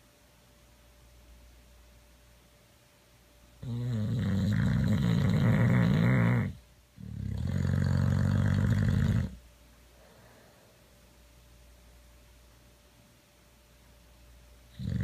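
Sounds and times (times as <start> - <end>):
dog snoring: 3.6 - 9.4, 14.7 - 15.0.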